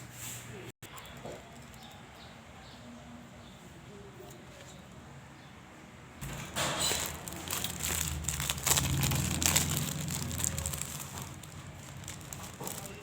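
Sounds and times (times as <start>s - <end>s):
paper rustling and crinkling: 6.2s - 13.0s.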